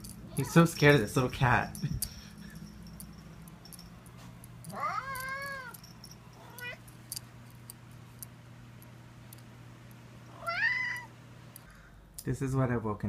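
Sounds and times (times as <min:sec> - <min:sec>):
low steady hum: 0:00.0 - 0:13.0
cat meowing: 0:04.7 - 0:05.7, 0:10.4 - 0:11.1.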